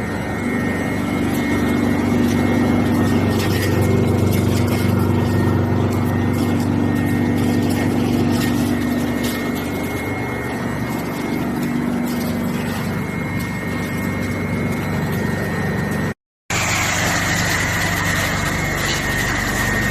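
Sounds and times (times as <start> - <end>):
wood chipper running: 0.0 - 19.9.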